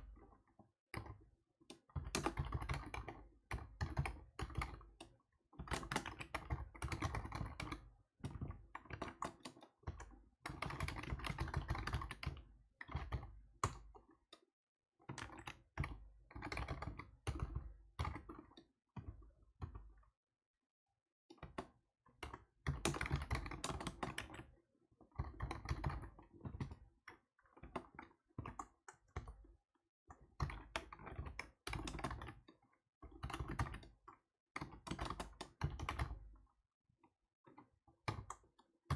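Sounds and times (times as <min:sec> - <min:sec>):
typing on computer keyboard: 0:02.0 - 0:05.1, 0:10.6 - 0:13.8, 0:22.7 - 0:24.4, 0:34.6 - 0:36.2.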